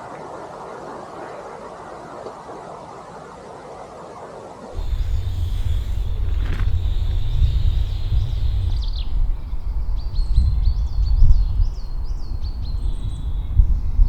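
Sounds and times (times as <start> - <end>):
wind buffeting microphone: 4.7 - 14.0
small birds chirping: 4.8 - 14.0.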